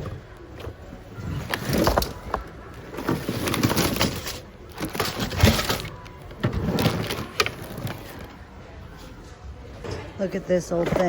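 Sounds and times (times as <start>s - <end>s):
hard objects clattering together: 0.0s - 8.3s.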